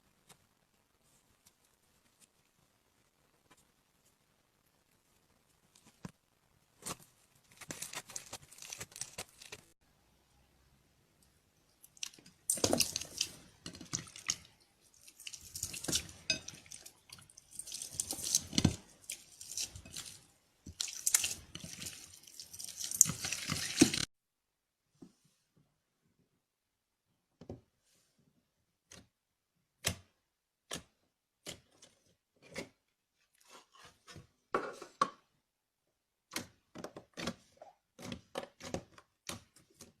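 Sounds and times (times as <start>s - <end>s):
hands squishing slime: 11.8s - 24.1s.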